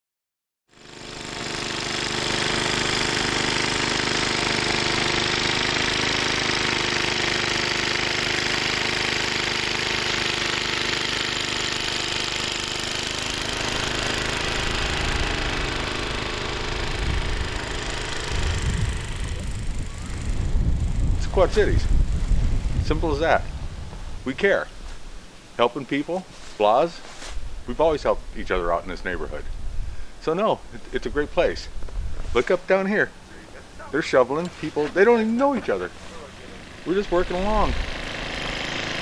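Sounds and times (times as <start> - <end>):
snow blower engine running: 0.7 - 23.4, 32.4 - 39.0.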